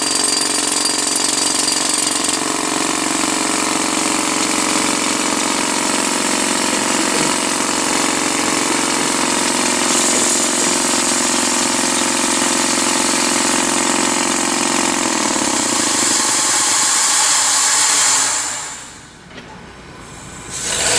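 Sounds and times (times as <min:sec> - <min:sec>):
engine running with hiss: 0:20.1 - 0:20.9.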